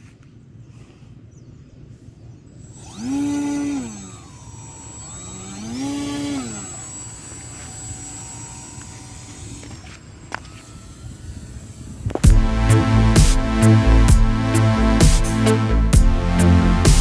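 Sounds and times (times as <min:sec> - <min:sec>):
steady high whine: 0:02.5 - 0:17.0
electric motor spinning propeller: 0:02.6 - 0:15.7.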